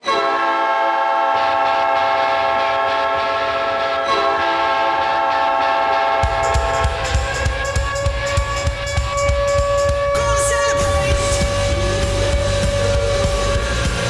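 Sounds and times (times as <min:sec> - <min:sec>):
hockey goal horn: 0:00.0 - 0:13.8
drums: 0:06.1 - 0:14.0.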